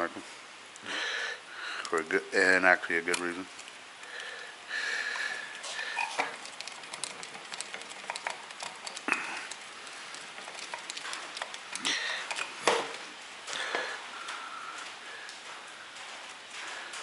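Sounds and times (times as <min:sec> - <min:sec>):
tools and parts clicking and scraping: 0:02.9 - 0:03.8, 0:05.5 - 0:13.1.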